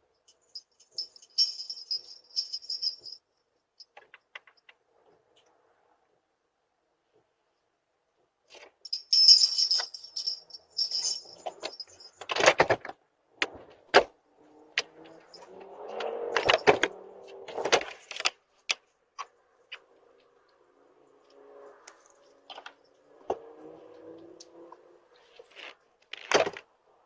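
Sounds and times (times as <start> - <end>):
metallic jingling: 0.2 - 4.0, 8.9 - 12.4.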